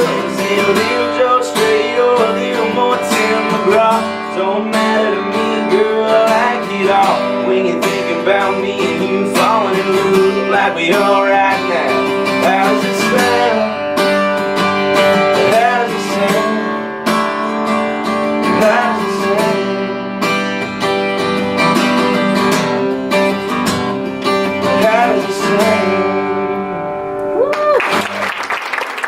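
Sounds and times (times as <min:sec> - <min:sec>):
acoustic guitar strumming: 0:00.0 - 0:27.4.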